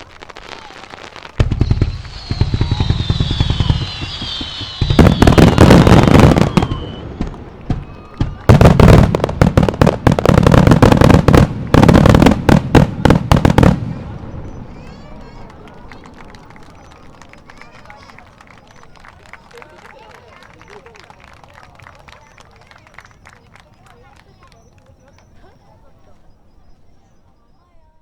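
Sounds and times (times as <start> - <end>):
firework falling whistle: 0.0 - 9.9
fireworks bangs and crackles: 0.0 - 26.4.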